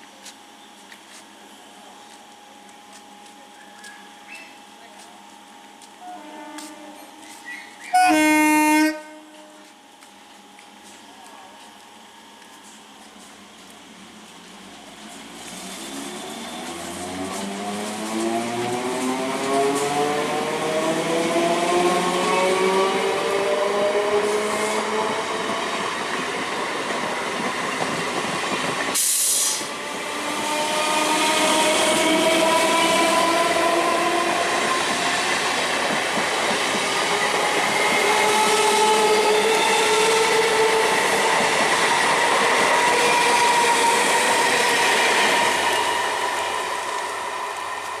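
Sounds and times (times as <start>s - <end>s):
electric train motors humming: 0.2s - 48.0s.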